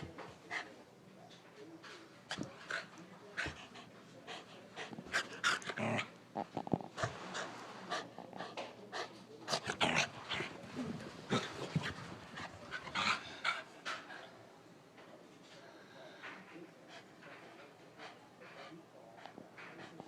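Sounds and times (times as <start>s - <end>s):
dog panting: 1.8s - 6.2s, 6.8s - 14.4s, 16.3s - 20.0s
dog growling: 5.0s - 7.2s, 9.5s - 13.7s.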